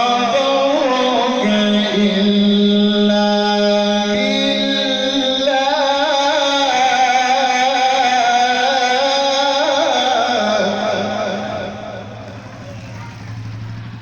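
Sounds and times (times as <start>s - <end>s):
man reciting melodically: 0.0s - 12.8s.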